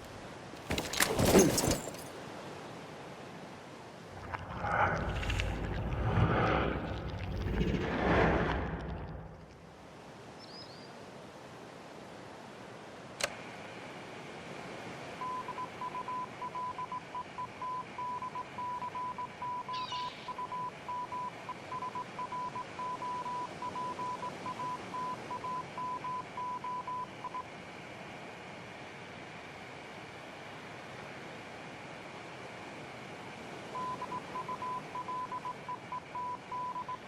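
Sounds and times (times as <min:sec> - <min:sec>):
morse code tone: 0:15.2 - 0:27.4, 0:33.8 - 0:37.0.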